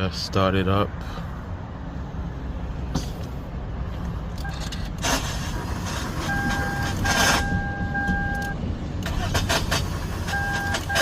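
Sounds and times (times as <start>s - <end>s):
electronic warning tone: 6.3s - 8.6s.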